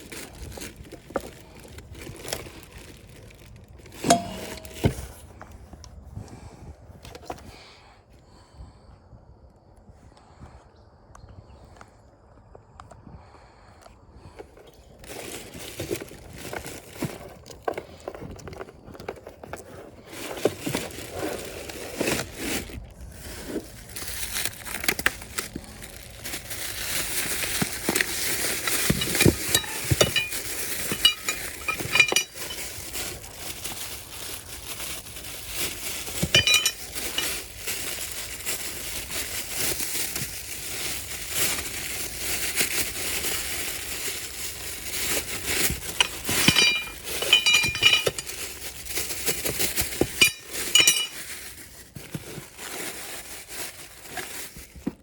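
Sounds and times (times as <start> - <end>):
packaging crinkling: 0.0 - 5.3, 14.9 - 55.0
small hard parts clinking: 0.1 - 5.6, 24.7 - 52.2.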